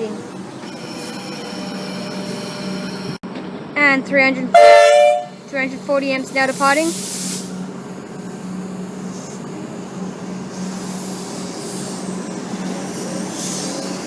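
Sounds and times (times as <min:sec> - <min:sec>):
electric train humming: 0:00.0 - 0:14.0
train hiss: 0:06.3 - 0:14.0.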